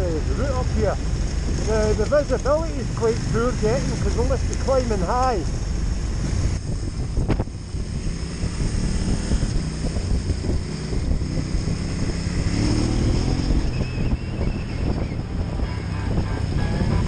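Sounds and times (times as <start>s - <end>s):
motorcycle engine running: 0.0s - 17.0s
wind noise on microphone: 0.0s - 17.0s.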